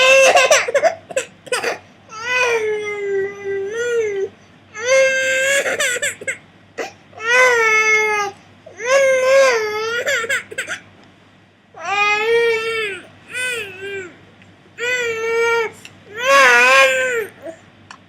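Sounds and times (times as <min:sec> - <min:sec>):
baby wailing: 0:01.6 - 0:06.4, 0:11.8 - 0:14.2, 0:14.8 - 0:17.6.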